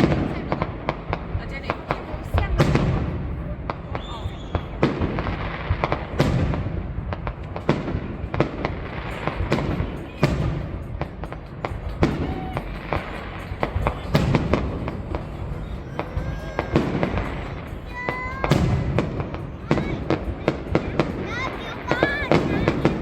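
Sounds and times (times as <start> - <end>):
fireworks bangs: 0.0 - 23.0
fireworks rumble and crackle: 0.0 - 23.0.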